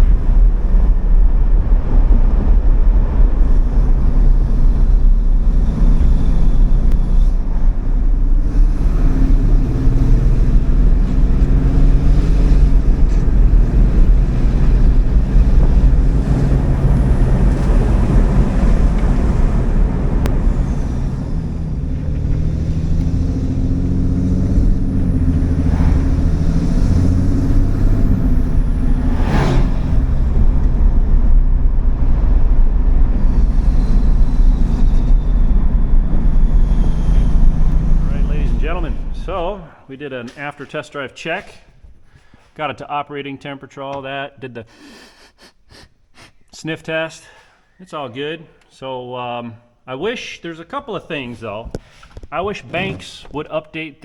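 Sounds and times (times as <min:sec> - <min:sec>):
road and wind rumble: 0:00.0 - 0:39.9
pickup diesel engine accelerating: 0:00.0 - 0:40.4.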